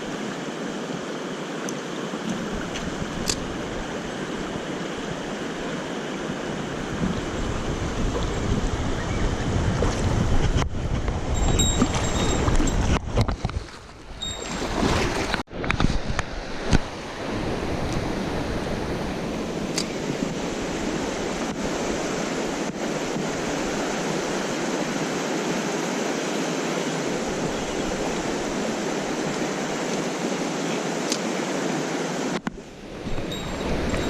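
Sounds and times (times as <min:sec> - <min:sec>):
stream rushing over rocks: 0:14.2 - 0:34.0.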